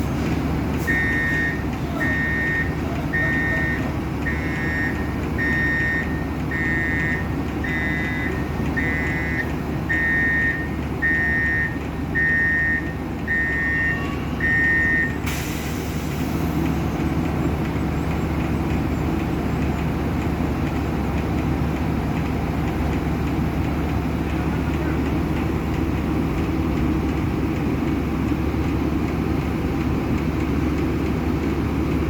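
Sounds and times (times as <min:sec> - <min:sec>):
diesel truck engine running: 0:00.0 - 0:32.0
reversing alarm beeping: 0:00.8 - 0:15.6.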